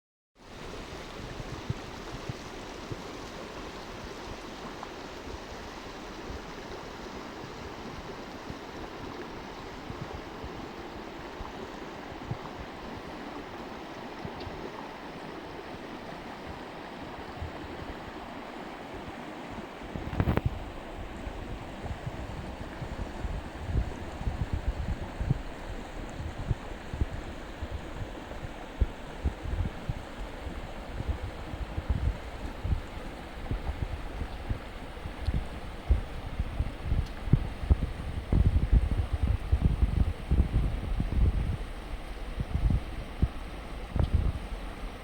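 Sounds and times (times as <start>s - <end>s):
water rushing: 0.4s - 45.0s
wind buffet on microphone: 0.5s - 45.0s
soft low thumps: 21.4s - 44.6s.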